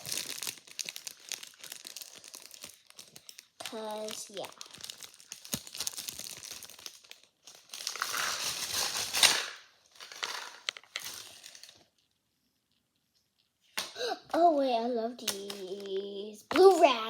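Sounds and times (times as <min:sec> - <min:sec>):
plastic packaging crinkling: 0:00.0 - 0:12.2.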